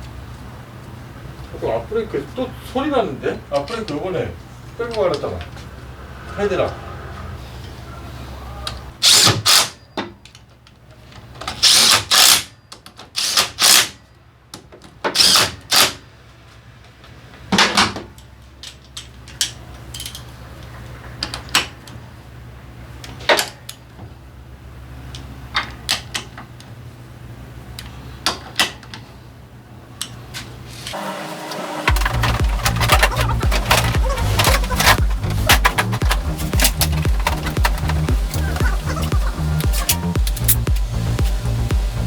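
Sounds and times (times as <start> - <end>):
hand tools and metal clanking: 18.6 - 22.0, 30.3 - 41.6
steady low hum: 31.4 - 42.0.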